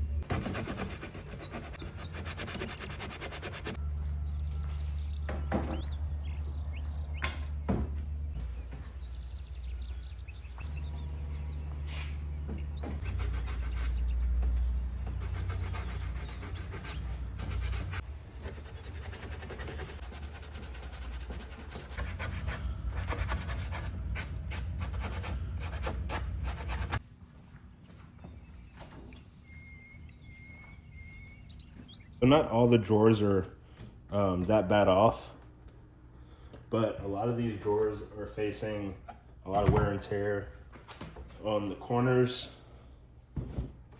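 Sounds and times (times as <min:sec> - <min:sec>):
low steady hum: 0:00.0 - 0:32.2
sanding particle board: 0:00.2 - 0:03.8, 0:13.0 - 0:27.0.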